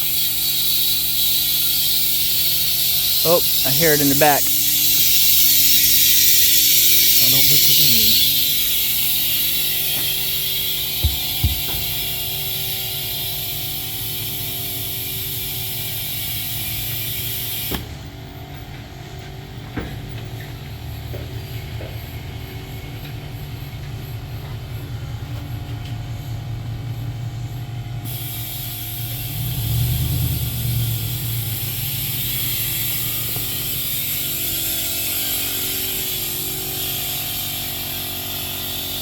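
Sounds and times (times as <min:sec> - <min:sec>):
tractor engine running: 0:00.0 - 0:16.0, 0:28.6 - 0:38.2
hiss: 0:00.0 - 0:17.9, 0:28.0 - 0:39.0.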